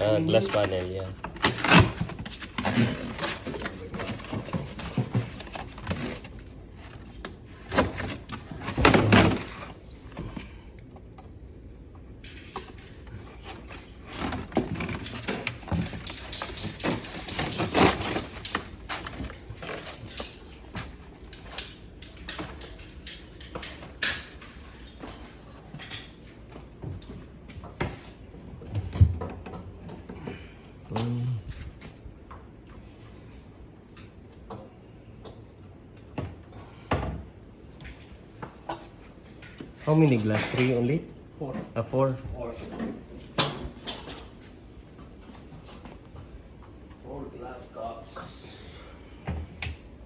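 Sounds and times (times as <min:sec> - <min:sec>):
objects knocking and clattering: 0:00.4 - 0:11.4, 0:12.2 - 0:30.4.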